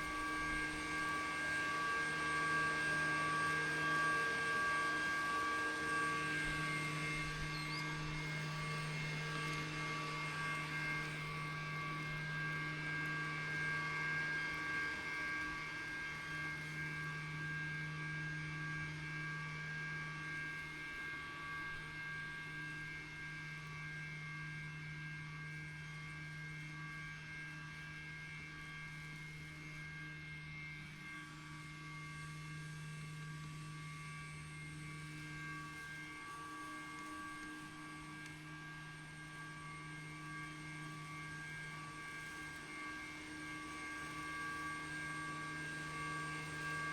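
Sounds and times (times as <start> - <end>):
robot mower motors humming: 0.0 - 17.4, 29.4 - 46.9.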